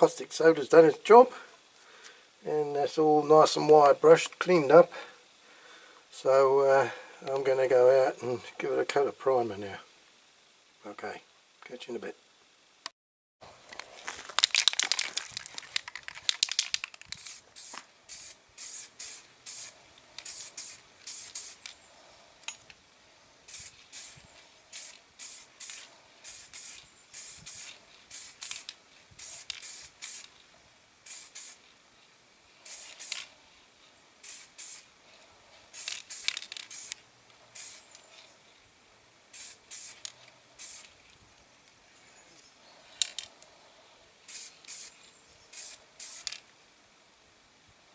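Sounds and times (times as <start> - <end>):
spray-paint can hissing: 16.2 - 21.8, 23.5 - 30.4, 31.0 - 31.7, 32.6 - 33.3, 34.2 - 34.9, 35.6 - 38.0, 39.3 - 41.0, 44.3 - 46.4.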